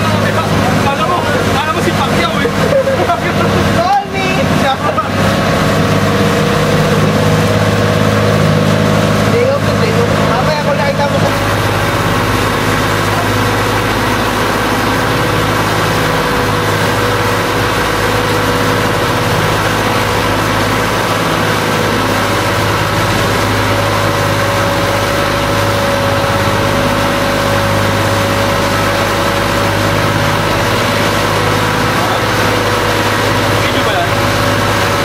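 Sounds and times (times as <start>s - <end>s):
boat engine droning: 0.0s - 35.0s.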